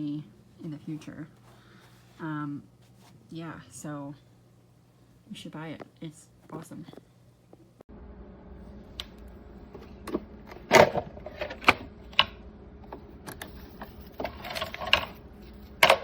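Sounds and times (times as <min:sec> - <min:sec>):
hard plastic parts clattering: 0:13.3 - 0:16.0.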